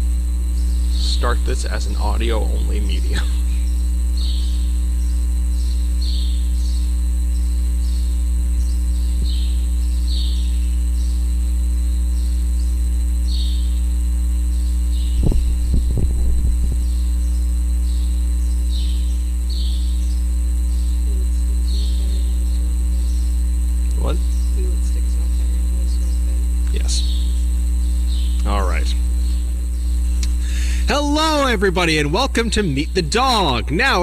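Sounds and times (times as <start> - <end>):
low electrical hum: 0.0 - 34.0.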